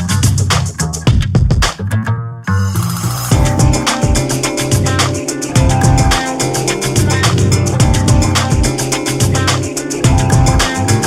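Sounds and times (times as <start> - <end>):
steady percussion beat: 0.0 - 1.8, 2.8 - 11.0
plucked guitar: 3.3 - 11.0.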